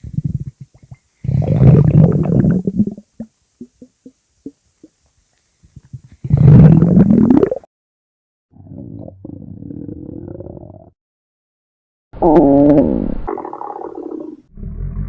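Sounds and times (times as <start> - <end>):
stomach growling: 0.0 - 4.9, 5.8 - 7.7, 8.6 - 11.0, 12.2 - 15.0.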